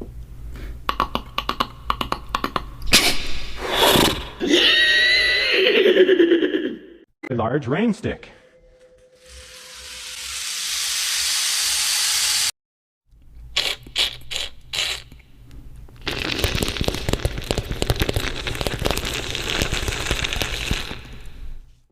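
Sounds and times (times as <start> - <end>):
beatboxer imitating rain stick: 0.9 - 2.8.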